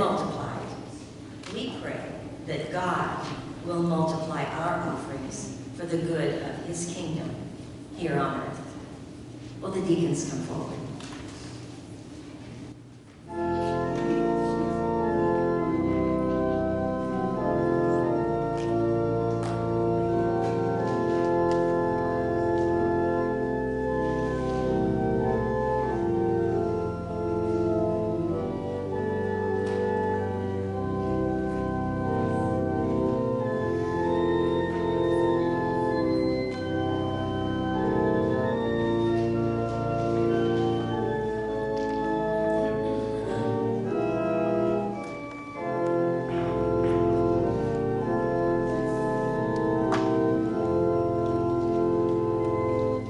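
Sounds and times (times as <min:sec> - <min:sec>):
church organ chords: 0:13.2 - 0:53.0.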